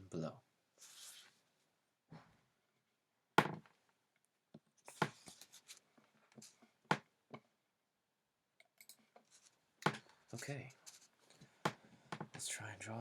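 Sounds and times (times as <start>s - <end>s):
sharp knocks and taps: 3.4s - 3.8s.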